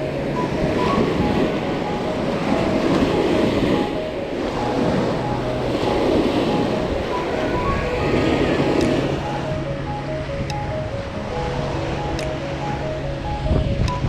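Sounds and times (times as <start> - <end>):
ocean surf washing onto beach: 0.0 - 14.0
wind on microphone: 0.0 - 14.0.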